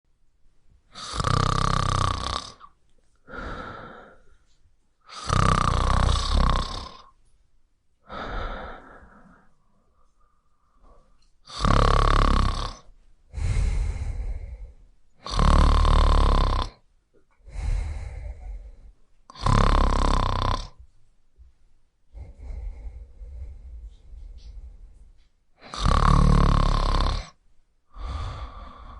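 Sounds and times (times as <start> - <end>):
cat snoring: 1.0 - 2.7, 5.1 - 7.1, 11.5 - 16.8, 17.6 - 20.8, 25.6 - 28.9.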